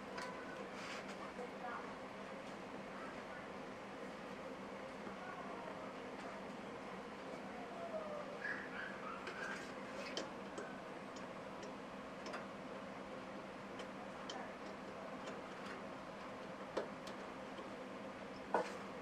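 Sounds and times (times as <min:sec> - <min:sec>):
faint hum: 0:00.0 - 0:19.0
light clicks and taps: 0:09.2 - 0:12.5.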